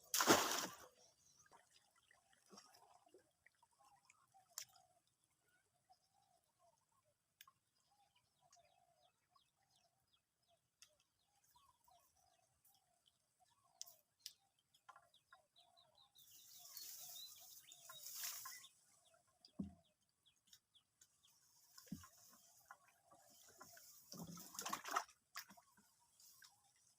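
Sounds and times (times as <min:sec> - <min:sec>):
bird chirps: 0:05.5 - 0:24.5.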